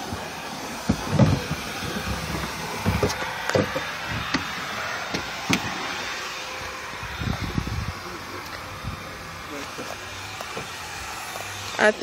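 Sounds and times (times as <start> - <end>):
steady hiss: 0.0 - 12.0
objects knocking inside a car: 0.8 - 4.5.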